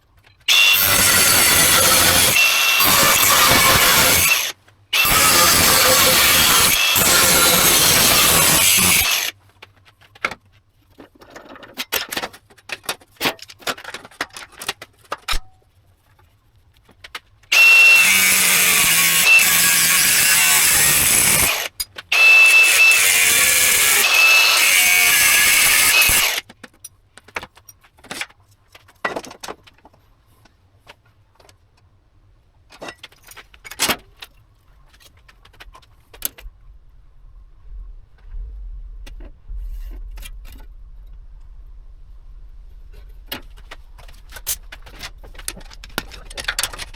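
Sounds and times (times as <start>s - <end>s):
power tool whining: 0.5s - 9.3s, 17.5s - 26.4s.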